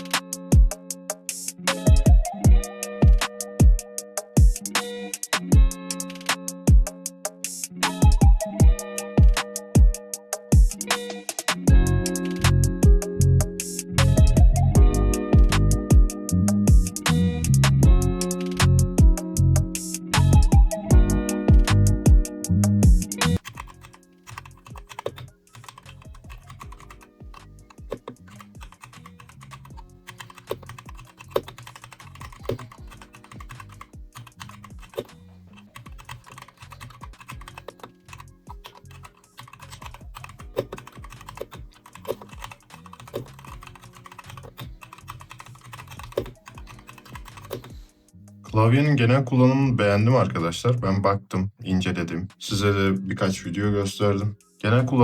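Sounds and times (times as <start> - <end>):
mechanical keyboard typing: 23.4 - 47.8.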